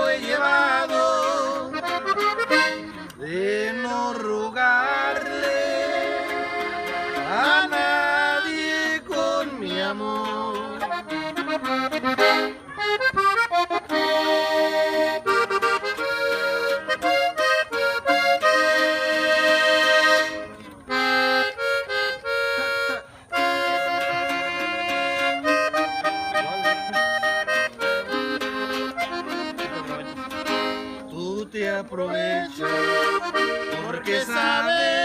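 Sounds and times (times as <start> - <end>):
accordion playing: 0.0 - 35.0.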